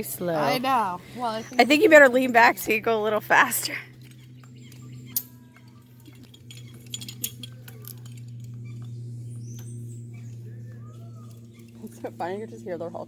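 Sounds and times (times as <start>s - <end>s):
zipline trolley humming on cable: 0.0s - 13.0s
metallic clinks of harness: 4.0s - 8.8s.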